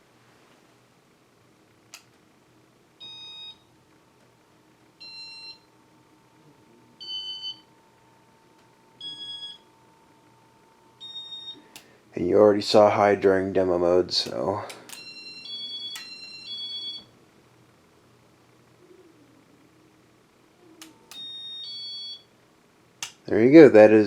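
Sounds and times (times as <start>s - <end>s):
faint steady tone: 2.5s - 12.2s
fan control click: 23.0s - 23.2s.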